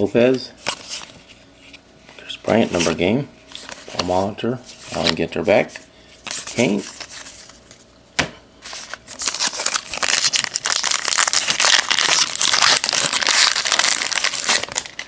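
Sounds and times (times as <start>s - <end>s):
foil wrapper crinkling: 8.7s - 15.0s.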